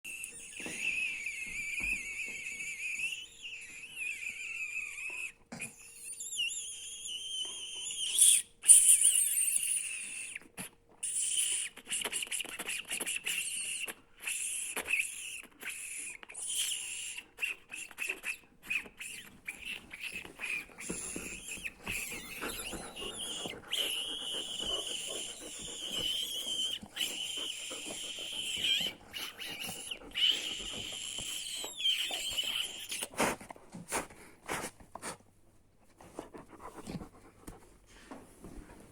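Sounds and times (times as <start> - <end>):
person squeaking high-pitched: 19.6 - 33.1.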